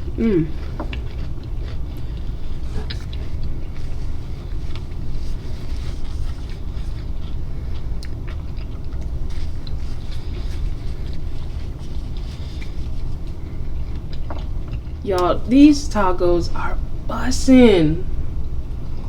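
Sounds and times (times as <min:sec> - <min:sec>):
crunching chewing sounds: 0:00.0 - 0:15.0
steady low rumble: 0:00.0 - 0:19.0.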